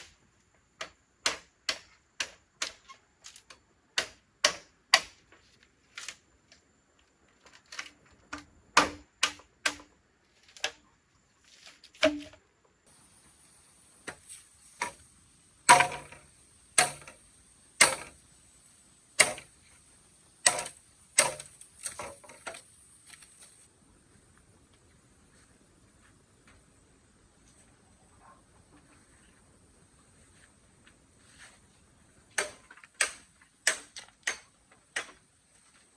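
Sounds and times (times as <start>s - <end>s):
faint high hiss: 10.4s - 32.4s
sharp irregular clicks and knocks: 15.7s - 17.2s, 20.4s - 23.2s, 32.4s - 35.2s.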